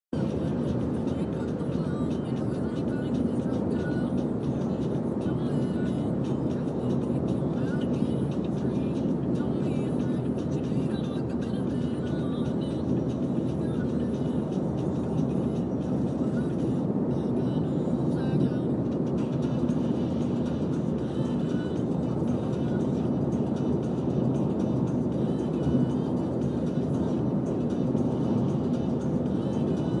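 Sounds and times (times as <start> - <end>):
car engine and road rumble: 0.1 - 30.0.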